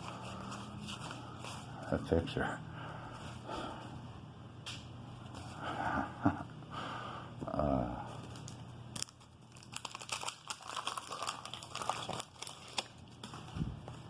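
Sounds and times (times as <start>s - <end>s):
wax paper wrapper crinkling and tearing: 8.1s - 14.0s.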